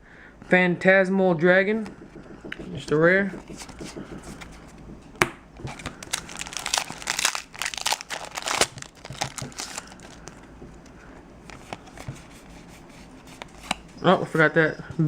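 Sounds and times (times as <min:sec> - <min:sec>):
foil wrapper crinkling and tearing: 0:05.6 - 0:10.4.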